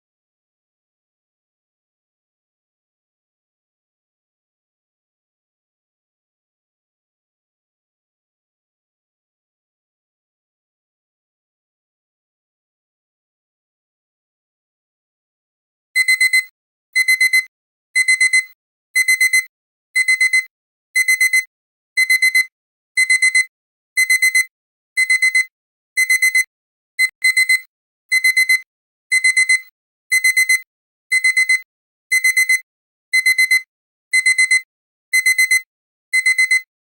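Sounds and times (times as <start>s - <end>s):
alarm clock beeping: 16.0s - 32.6s, 33.2s - 34.6s, 35.2s - 35.6s, 36.2s - 36.7s.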